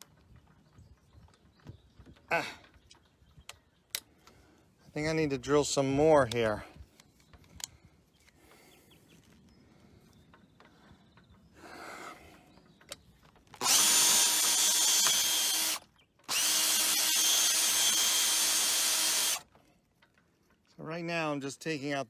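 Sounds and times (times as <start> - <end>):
power drill drilling rivet: 13.5 - 19.6.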